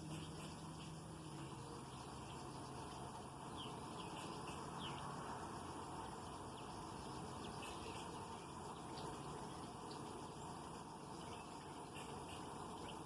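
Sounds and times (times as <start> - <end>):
faint bird chirps: 0.0 - 2.6, 3.5 - 5.1, 6.5 - 10.5, 11.1 - 13.0
low background noise: 0.0 - 13.0.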